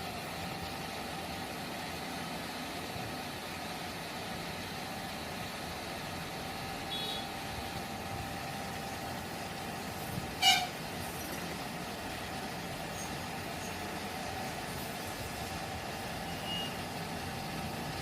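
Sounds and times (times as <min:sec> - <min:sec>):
short horn toot: 0:10.4 - 0:10.8.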